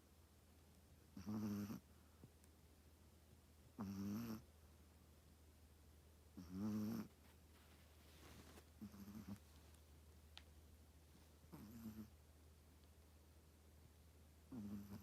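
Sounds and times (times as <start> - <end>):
dog snoring: 1.2 - 1.8, 3.8 - 4.5, 6.4 - 7.1, 8.8 - 9.4, 11.5 - 12.2, 14.5 - 15.0.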